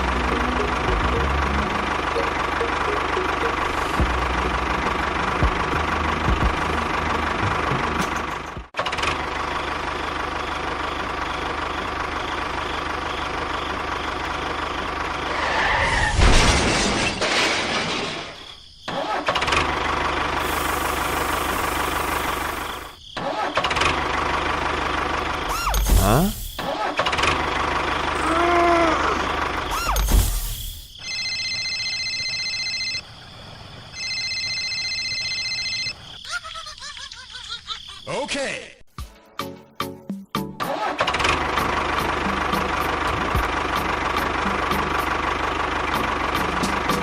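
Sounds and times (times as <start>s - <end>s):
engine running: 0.0s - 15.6s, 19.3s - 23.0s, 23.6s - 30.7s, 40.7s - 47.0s.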